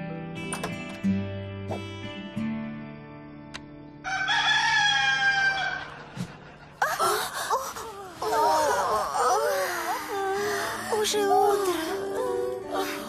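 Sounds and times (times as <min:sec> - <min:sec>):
rooster crowing: 0:04.0 - 0:06.0.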